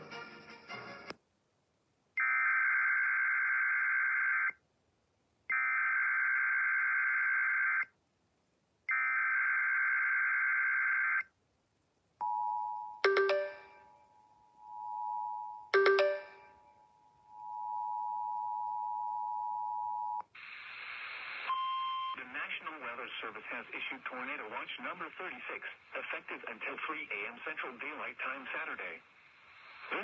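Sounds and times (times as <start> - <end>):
bell-like chime: 12.2 - 18.2.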